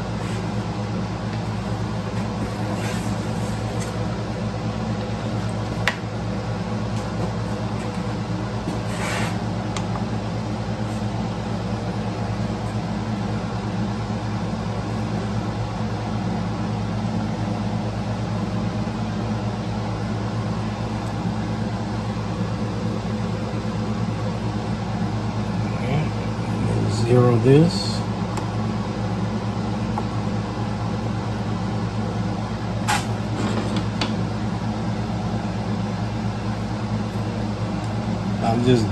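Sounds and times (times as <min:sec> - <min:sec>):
low machine hum: 0:00.0 - 0:38.9
brief rustle or scrape: 0:08.7 - 0:09.4, 0:32.9 - 0:34.0.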